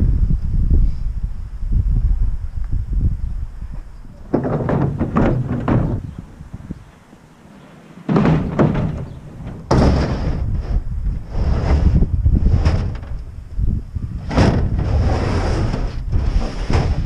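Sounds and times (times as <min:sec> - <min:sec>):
rattle and rumble: 0:00.0 - 0:06.8, 0:08.0 - 0:17.0
heavy thuds and clunks: 0:04.2 - 0:06.8, 0:08.0 - 0:13.3, 0:14.2 - 0:17.0.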